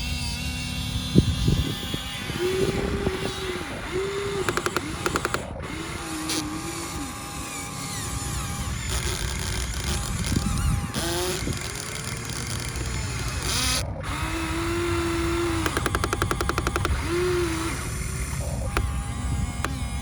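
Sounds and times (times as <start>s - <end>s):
hydraulic pump whining: 0.0s - 20.0s
clicks: 3.8s - 6.5s, 8.0s - 14.2s, 15.1s - 20.0s.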